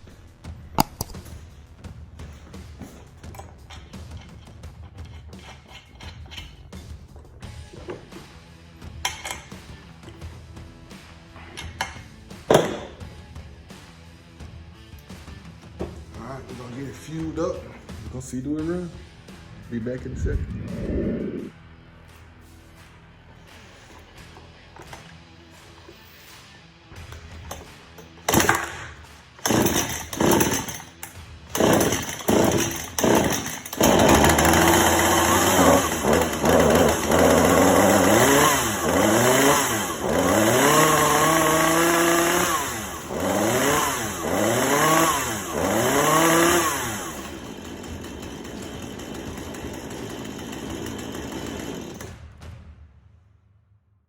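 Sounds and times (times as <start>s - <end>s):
chainsaw pull-start: 3.2s - 6.7s, 9.0s - 9.6s, 11.4s - 13.0s, 27.1s - 52.2s
chainsaw engine revving and idling: 11.5s - 13.0s, 27.2s - 52.2s.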